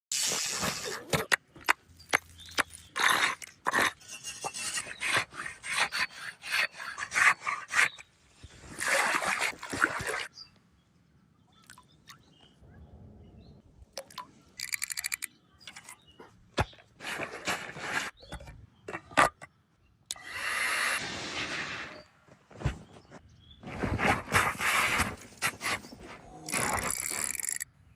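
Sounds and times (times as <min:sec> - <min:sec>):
rough scraping strokes: 0:02.3 - 0:09.6, 0:17.0 - 0:18.5
fast rattle: 0:14.6 - 0:15.3.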